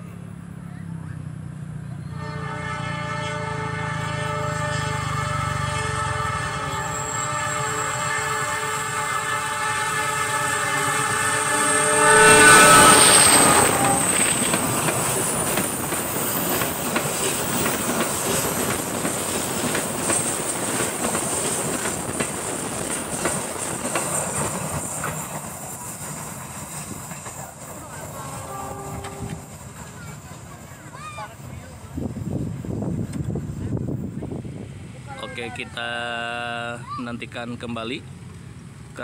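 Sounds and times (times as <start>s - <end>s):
train horn: 2.1s - 14.5s, 28.0s - 29.5s
train cars rattling over rails: 2.5s - 35.6s.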